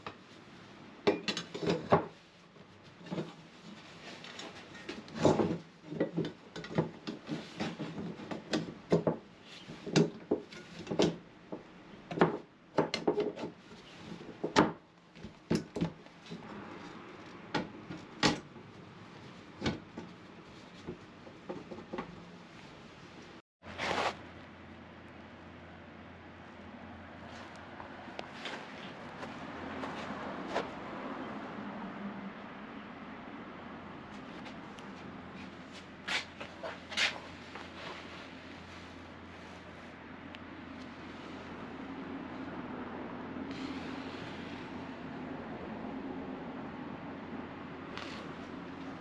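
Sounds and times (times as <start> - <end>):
hard objects knocking and scraping: 4.3 - 16.5.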